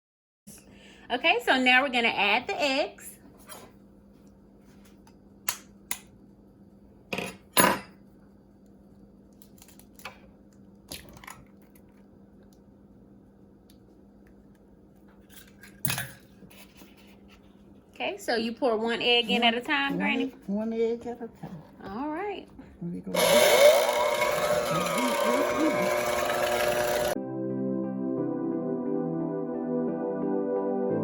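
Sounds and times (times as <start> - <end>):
faint steady hum: 0.5 - 23.1.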